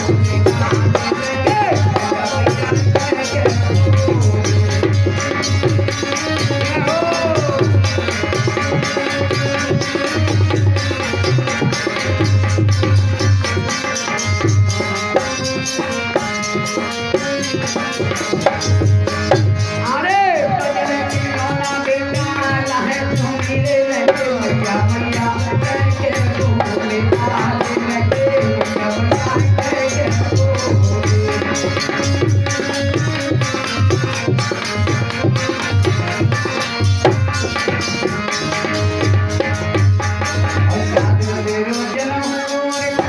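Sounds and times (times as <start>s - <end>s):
hand drum beat: 0.0s - 20.0s, 21.1s - 42.0s.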